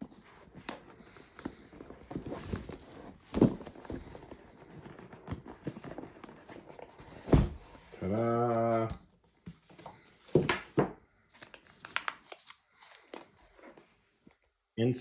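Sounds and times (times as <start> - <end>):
cardboard box being handled: 0.0 - 8.0.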